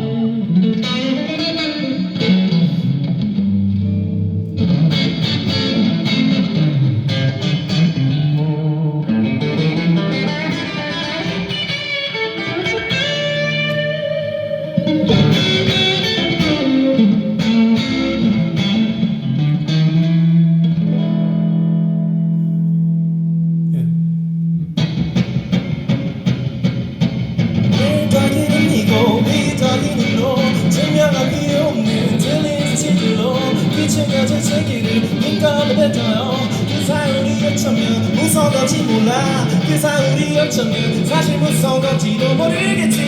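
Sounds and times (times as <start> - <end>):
electric guitar: 0.0 - 43.0
rock band playing: 0.2 - 21.6, 24.8 - 43.0
bass line: 13.1 - 43.0.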